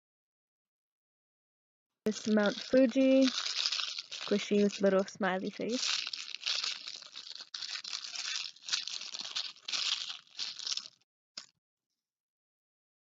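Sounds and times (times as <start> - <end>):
squishy toy crinkling and rustling: 2.1 - 11.5.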